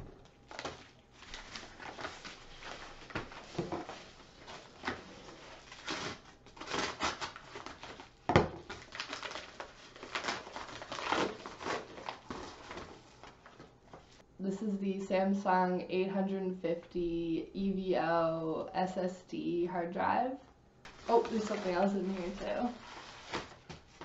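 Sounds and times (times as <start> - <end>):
packaging crinkling and tearing: 0.3 - 14.1.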